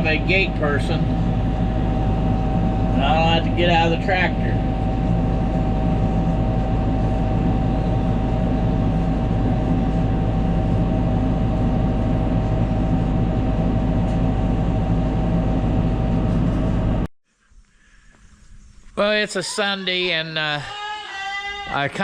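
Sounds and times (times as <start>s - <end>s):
high whine: 0.0s - 17.1s
tractor engine running: 0.0s - 17.1s.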